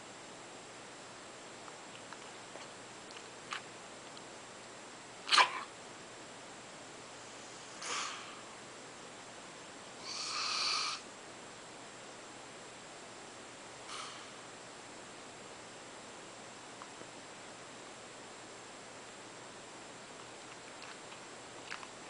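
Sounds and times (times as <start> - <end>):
woman snore-like breathing: 10.0 - 11.0.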